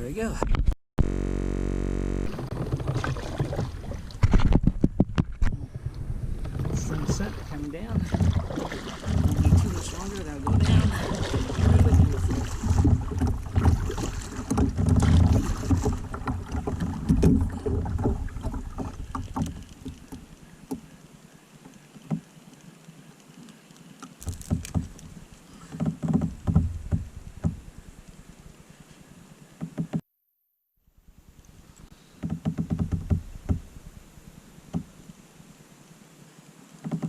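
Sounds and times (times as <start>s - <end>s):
water splashing against kayak hull: 2.3s - 22.6s, 23.9s - 28.8s, 31.3s - 35.1s
sharp knocks: 25.6s - 27.7s, 32.2s - 33.7s.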